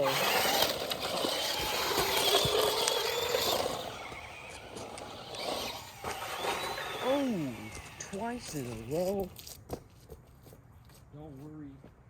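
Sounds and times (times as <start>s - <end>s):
toy truck motor whine: 0.0s - 9.0s.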